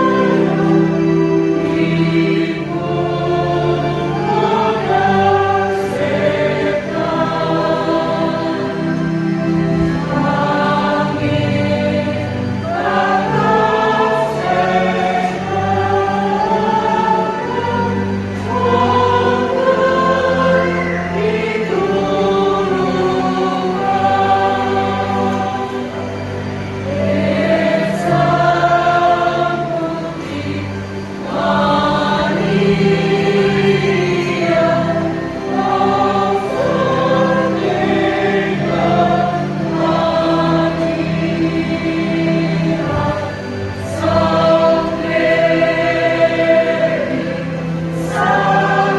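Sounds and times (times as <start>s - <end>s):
choir singing a hymn: 0.0s - 48.9s
sustained low accompanying notes: 0.0s - 48.9s.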